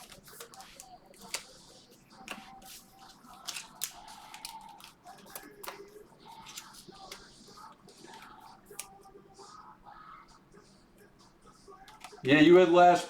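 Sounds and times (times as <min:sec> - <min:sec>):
cards handled: 0:00.0 - 0:09.6, 0:11.8 - 0:12.2.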